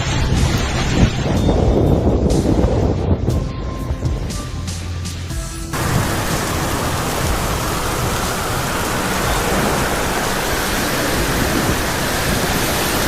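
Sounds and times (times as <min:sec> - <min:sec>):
heavy rain pouring: 0:05.7 - 0:13.0.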